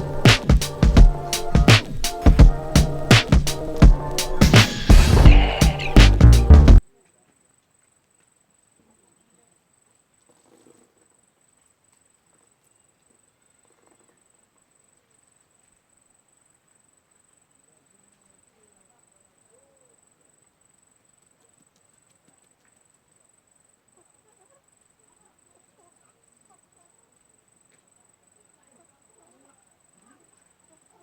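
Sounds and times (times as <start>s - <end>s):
faint chirps: 0.0s - 31.0s
high insect trill: 7.4s - 31.0s.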